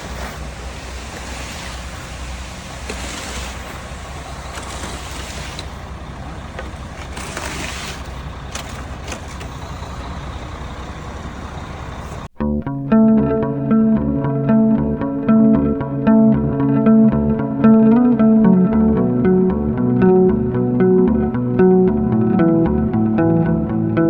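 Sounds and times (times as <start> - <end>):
concrete pouring down chute: 0.0 - 9.7
concrete mixer truck rumbling: 0.0 - 12.4, 13.4 - 24.0
guitar music: 12.4 - 24.0.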